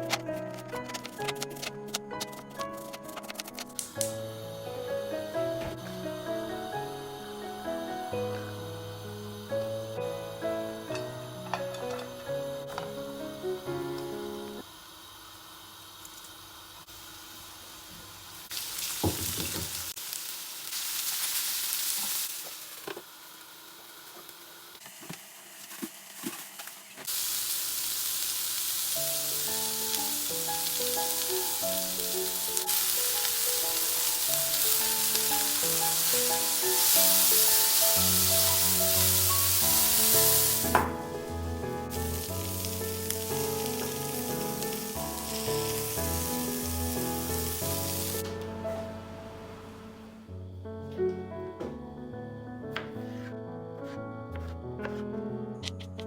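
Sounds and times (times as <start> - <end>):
soft melodic background music: 0.0 - 14.6, 29.0 - 56.0
steady hissing: 3.8 - 24.8, 27.0 - 50.7.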